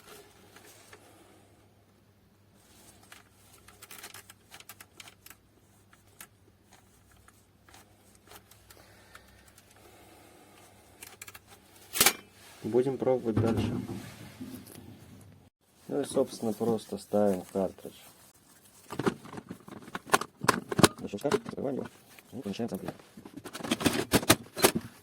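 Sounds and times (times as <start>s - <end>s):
plastic printer parts rattling: 2.8s - 9.8s, 10.9s - 12.1s, 18.8s - 25.0s.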